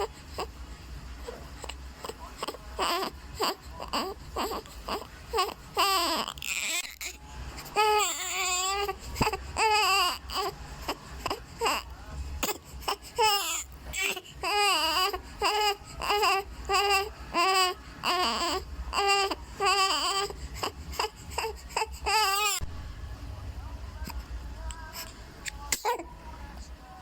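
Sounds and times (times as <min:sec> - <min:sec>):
baby crying: 0:01.2 - 0:22.7
baby breathing: 0:08.7 - 0:09.7, 0:20.2 - 0:22.2.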